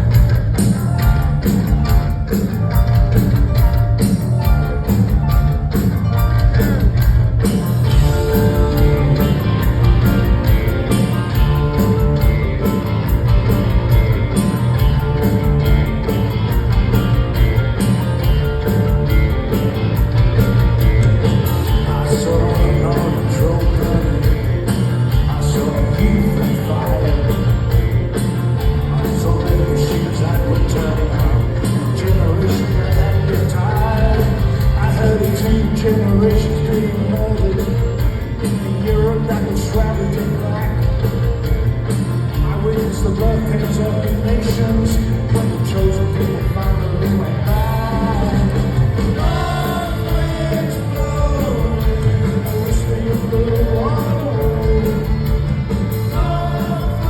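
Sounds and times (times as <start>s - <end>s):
electric guitar: 0.0s - 57.0s
rock band playing live: 0.0s - 57.0s.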